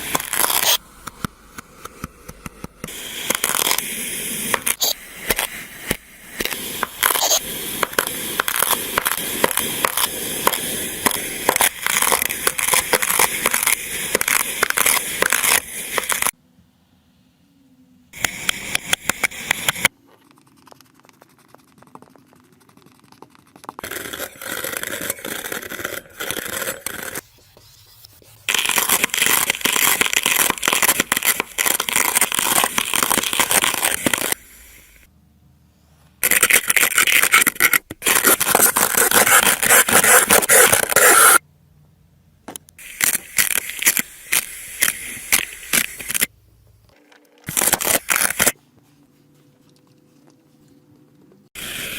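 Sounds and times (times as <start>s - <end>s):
kinetic sand scraped and crushed: 0.0s - 0.8s, 2.9s - 16.4s, 23.8s - 35.1s, 36.2s - 41.4s.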